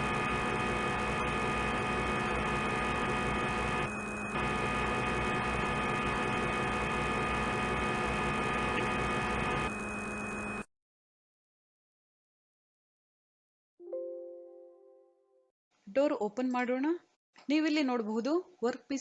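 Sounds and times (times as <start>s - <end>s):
machine whine over hum: 0.0s - 10.7s.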